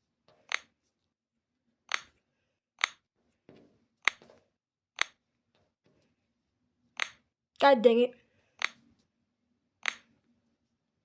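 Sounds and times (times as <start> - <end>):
puzzle pieces clicking into place: 1.9 - 2.2.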